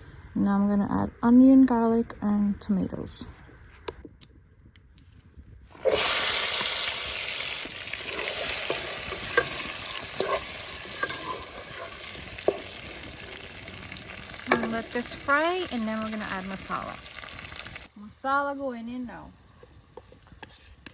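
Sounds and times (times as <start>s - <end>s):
vegetables sizzling in hot oil: 5.7s - 17.9s
utensil knocking on pan: 8.2s - 12.9s, 14.4s - 14.9s.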